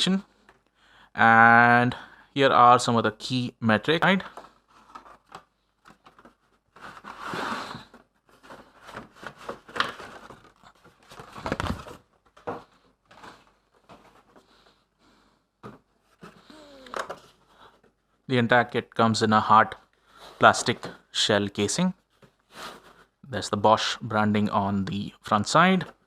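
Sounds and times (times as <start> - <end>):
packaging rustling and scraping: 4.3 - 14.7, 22.1 - 23.2.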